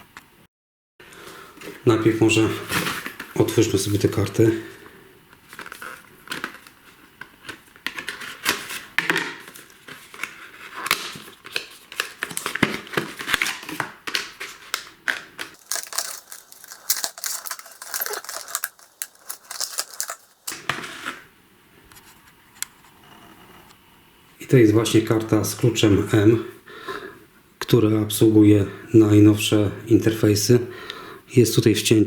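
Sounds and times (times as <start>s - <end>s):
packaging crackling and crinkling: 5.4s - 21.2s.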